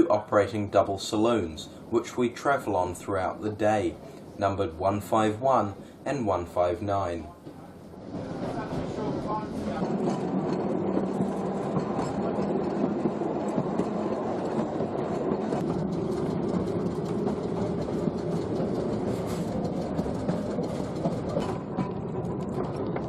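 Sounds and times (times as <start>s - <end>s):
tram motor hum: 7.4s - 23.0s
wheels on rails: 8.0s - 23.0s.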